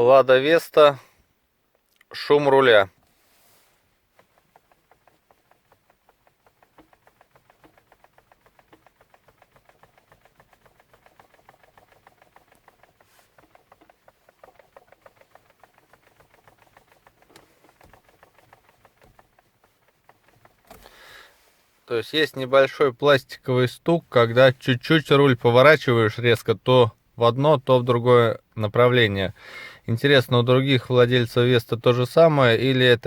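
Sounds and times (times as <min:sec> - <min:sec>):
steering column plastic knocking: 0:04.0 - 0:21.4.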